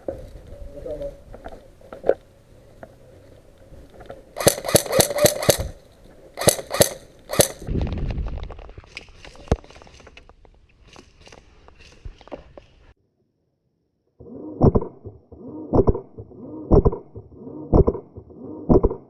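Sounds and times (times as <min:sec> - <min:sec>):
airsoft gun shots: 0:04.4 - 0:05.8, 0:06.4 - 0:07.7.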